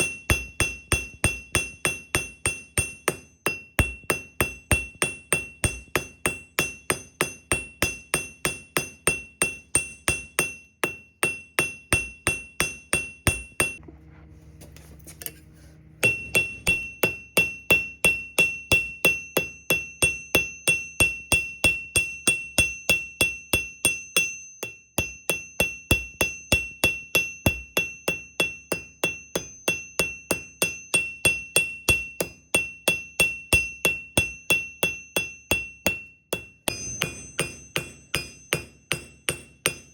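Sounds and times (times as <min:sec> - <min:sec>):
hammer ringing on an anvil: 0:00.0 - 0:13.8, 0:16.0 - 0:39.9
low hum: 0:13.8 - 0:17.2.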